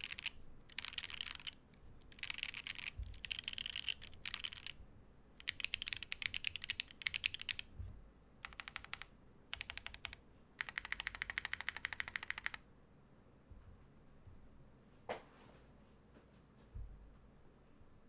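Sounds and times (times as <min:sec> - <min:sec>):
mechanical keyboard typing: 0:00.0 - 0:04.8, 0:05.4 - 0:07.7, 0:08.4 - 0:12.6.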